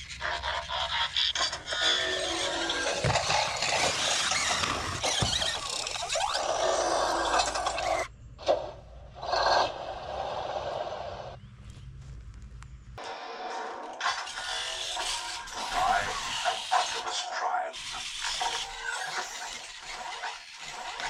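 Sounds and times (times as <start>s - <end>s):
toy transforming sound effect: 0.0s - 8.1s, 14.0s - 21.0s
servo motors whirring: 1.4s - 8.1s, 14.0s - 21.0s.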